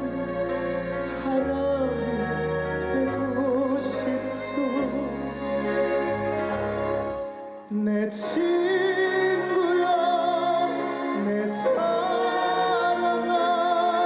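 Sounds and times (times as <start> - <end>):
slow ballad instrumental: 0.0 - 14.0.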